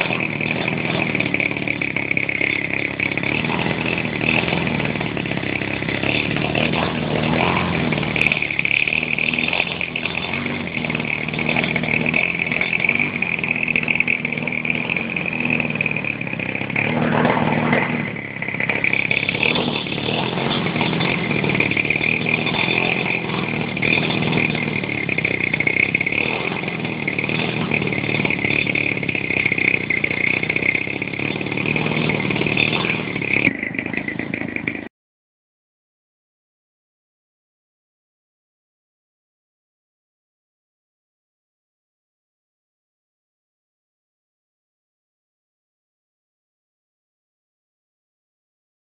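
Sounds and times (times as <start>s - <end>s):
model airplane engine running: 0.0s - 34.9s.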